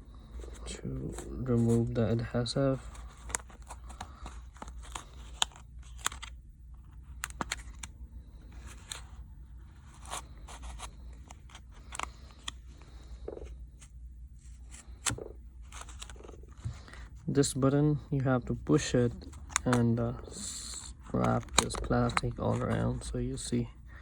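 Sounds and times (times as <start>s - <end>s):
plastic pick scraping and clicking: 21.0s - 23.0s.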